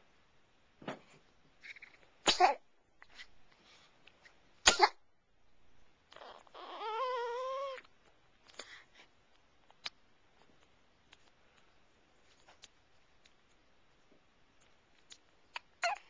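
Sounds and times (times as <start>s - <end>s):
sharp hiccups: 4.6s - 5.0s.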